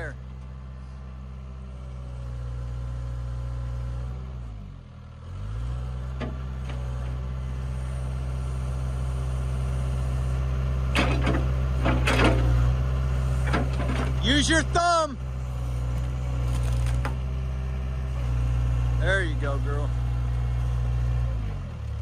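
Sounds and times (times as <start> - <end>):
excavator diesel engine running: 0.0 - 22.0
excavator bucket clanking: 10.9 - 12.6, 13.4 - 14.2.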